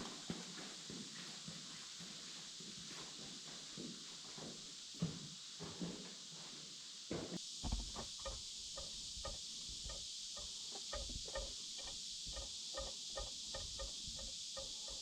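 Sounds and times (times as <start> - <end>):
high-pitched hiss: 0.0 - 15.0
footsteps on rock and dirt: 7.6 - 8.2.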